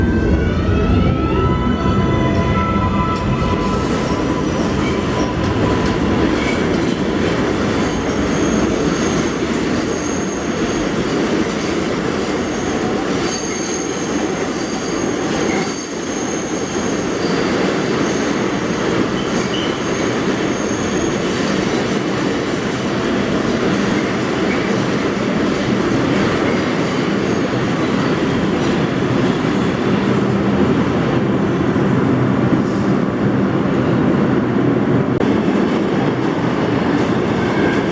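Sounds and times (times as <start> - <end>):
subway train rumble: 0.0 - 37.9.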